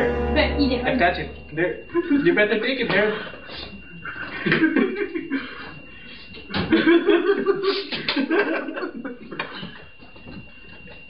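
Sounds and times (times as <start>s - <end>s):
people laughing: 4.1s - 5.6s, 6.6s - 9.5s.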